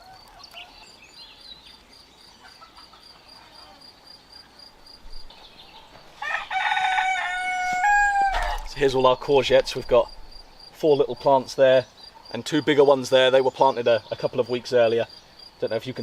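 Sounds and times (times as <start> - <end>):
rooster crowing: 6.1 - 8.8.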